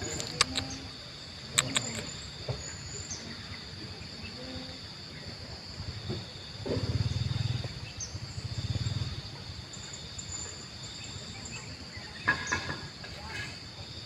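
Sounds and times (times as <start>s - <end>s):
insects chirring: 0.0s - 14.0s
sharp click: 0.1s - 0.8s, 1.5s - 2.1s.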